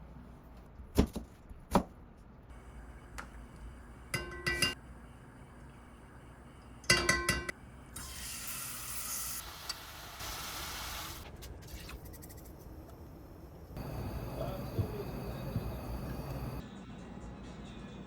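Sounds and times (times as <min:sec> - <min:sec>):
steady hiss: 0:13.8 - 0:16.6.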